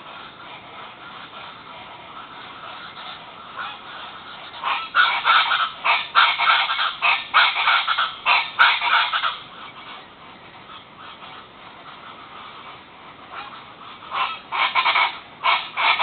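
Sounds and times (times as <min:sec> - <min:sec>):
loud harsh pulsing bird calls: 0:00.0 - 0:10.2, 0:13.3 - 0:16.0
birds squawking: 0:00.0 - 0:16.0.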